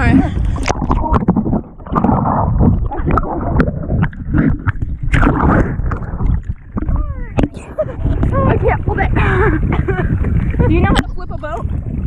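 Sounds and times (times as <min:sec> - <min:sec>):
water splashing around kayak: 0:00.0 - 0:12.0
wind buffeting microphone: 0:00.0 - 0:12.0.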